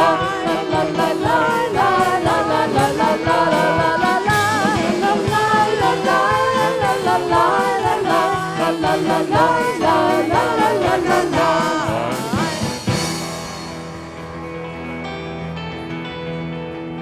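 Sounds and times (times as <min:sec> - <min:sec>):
voices singing wordless refrain: 0:00.0 - 0:13.2
steady drum beat: 0:00.0 - 0:14.2
worship band playing: 0:00.0 - 0:17.0.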